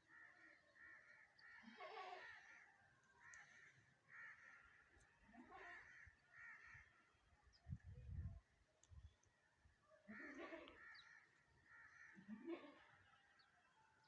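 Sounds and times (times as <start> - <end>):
bird harsh calls: 5.5 - 7.0, 10.1 - 12.9
low wind rumble on microphone: 7.6 - 8.5.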